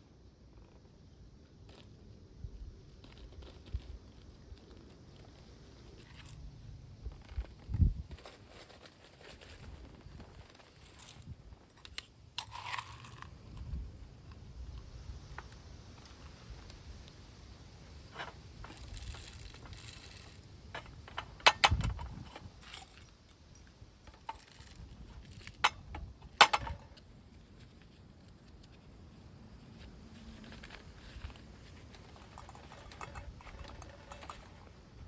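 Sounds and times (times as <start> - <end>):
wind rumbling on microphone: 6.0 - 8.4, 13.1 - 22.8
camp gear clinking and knocking: 7.1 - 14.4, 17.6 - 27.8, 30.2 - 35.0.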